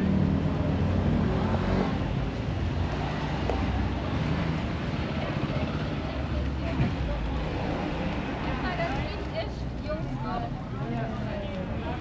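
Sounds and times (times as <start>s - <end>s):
city street noise: 0.0s - 12.0s.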